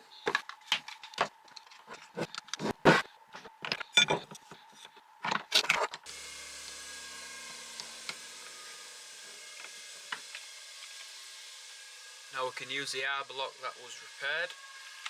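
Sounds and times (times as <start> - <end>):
hard tool parts knocking and scraping: 0.1 - 6.0.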